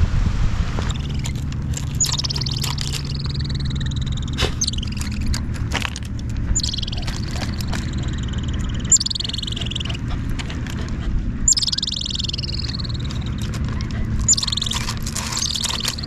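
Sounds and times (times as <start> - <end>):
low rumble: 0.0 - 16.0
squirrel chattering: 0.8 - 5.5, 6.1 - 16.0.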